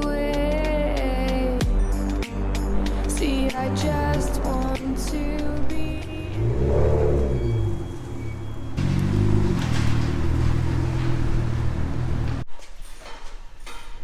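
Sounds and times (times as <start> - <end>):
car engine accelerating: 2.6 - 12.5.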